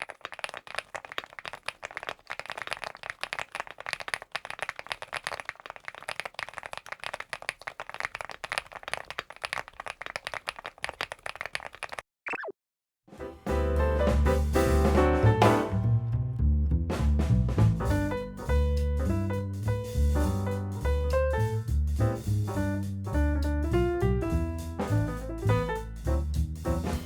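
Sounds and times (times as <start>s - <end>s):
mechanical keyboard typing: 0.0s - 12.0s.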